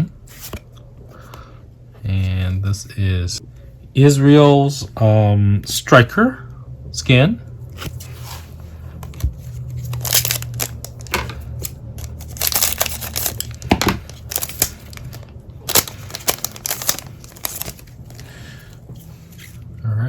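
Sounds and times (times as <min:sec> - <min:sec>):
wrapper crinkling and tearing: 0:09.1 - 0:18.4.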